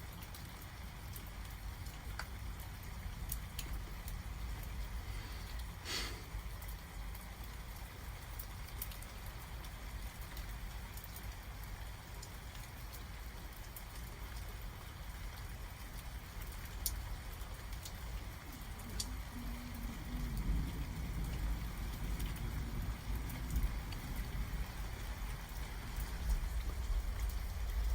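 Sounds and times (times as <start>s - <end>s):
steady rain: 0.0s - 27.9s
faint low hum: 17.8s - 27.9s
low thunder rumble: 18.4s - 27.9s.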